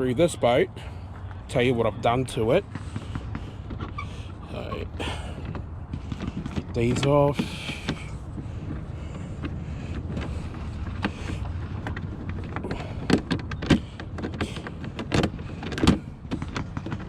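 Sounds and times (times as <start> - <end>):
steady low rumble: 0.0 - 17.0
sharp clicks and knocks: 5.4 - 17.0.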